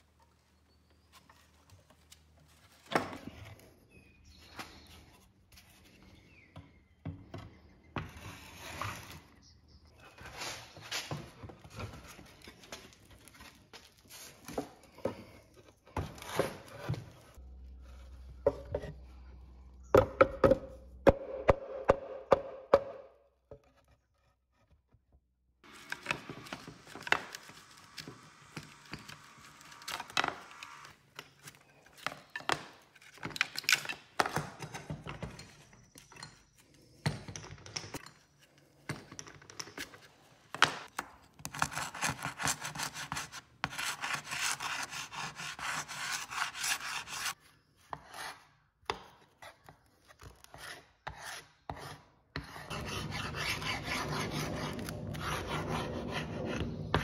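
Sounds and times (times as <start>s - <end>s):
hand tool scraping wood: 41.6s - 47.4s, 50.3s - 57.0s.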